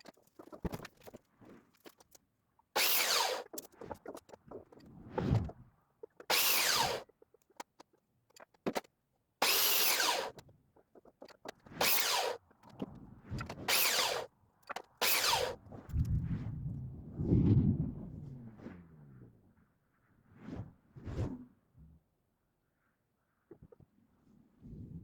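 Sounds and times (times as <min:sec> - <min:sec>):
power drill bursts: 0:02.8 - 0:03.5, 0:06.3 - 0:07.1, 0:09.4 - 0:10.4, 0:11.8 - 0:12.4, 0:13.7 - 0:14.3, 0:15.0 - 0:15.6.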